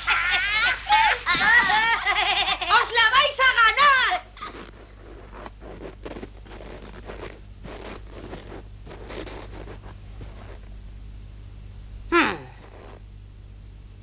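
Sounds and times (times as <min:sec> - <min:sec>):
scraping and rustling: 0:04.5 - 0:10.7.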